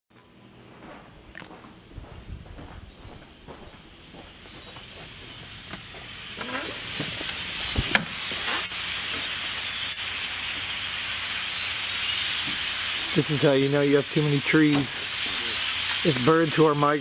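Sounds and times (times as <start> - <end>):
flock of birds chattering: 2.0 - 17.0
sharp bird chirps: 2.8 - 16.2.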